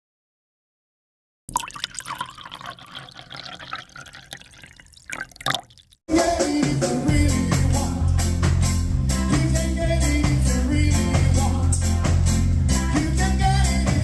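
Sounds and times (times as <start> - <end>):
reggae music: 6.1 - 14.0.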